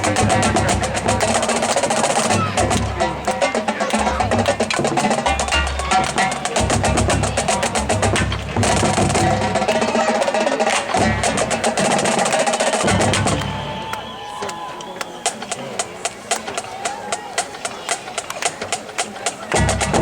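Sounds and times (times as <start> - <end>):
bass drums: 0.0 - 10.0, 10.9 - 13.8, 19.5 - 20.0
fast snare drum strokes: 0.0 - 20.0.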